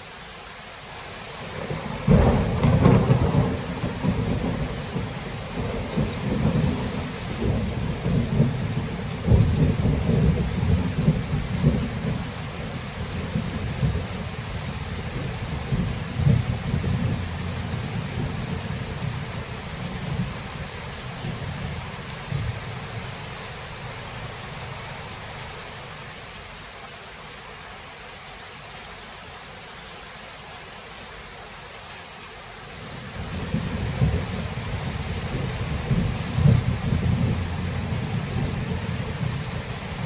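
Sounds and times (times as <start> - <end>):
steady rain: 0.0 - 40.0
rolling thunder: 1.6 - 12.3, 13.0 - 23.4, 33.2 - 40.0.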